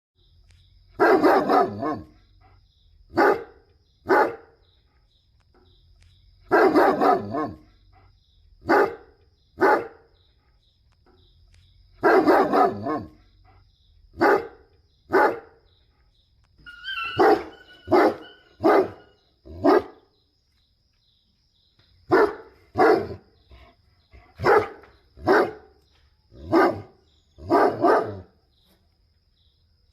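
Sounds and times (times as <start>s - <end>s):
dog barking: 1.0s - 2.2s, 3.1s - 4.6s, 6.5s - 10.1s, 12.0s - 15.6s, 17.0s - 20.0s, 22.1s - 23.2s, 24.2s - 25.8s, 26.4s - 28.3s
faint steady high tone: 16.6s - 19.4s.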